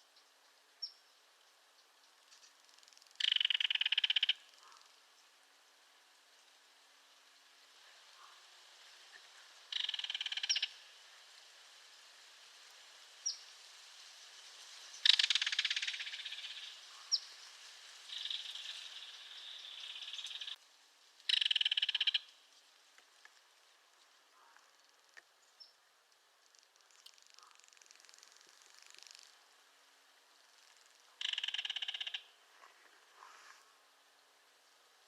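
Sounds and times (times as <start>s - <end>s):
kingfisher rattle call: 3.2s - 4.8s, 9.7s - 10.8s, 15.0s - 17.2s, 18.1s - 20.6s, 21.3s - 22.4s, 30.7s - 32.4s.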